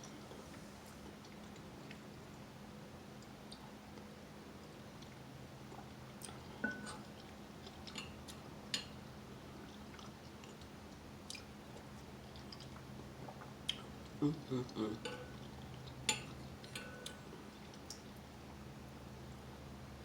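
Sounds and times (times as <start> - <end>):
low steady hum: 0.0 - 20.0
person chewing soup: 4.9 - 18.3.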